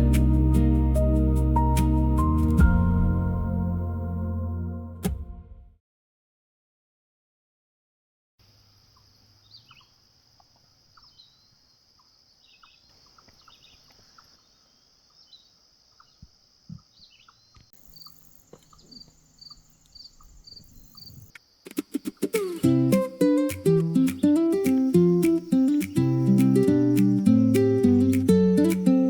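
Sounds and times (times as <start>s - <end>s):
high insect trill: 8.4s - 29.0s
short bird chirps: 8.9s - 10.0s
high repeated call: 22.3s - 29.0s.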